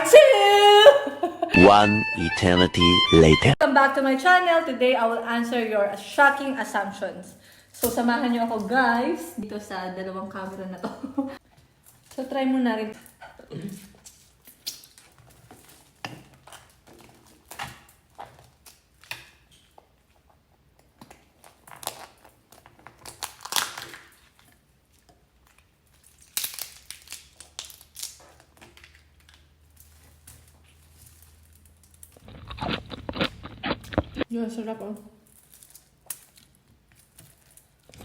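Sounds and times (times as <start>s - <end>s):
food crunching and crinkling: 11.4s - 38.0s.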